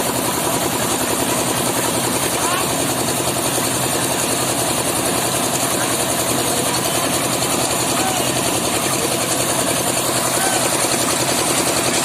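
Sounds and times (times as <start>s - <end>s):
machinery engine chugging: 0.0s - 12.0s.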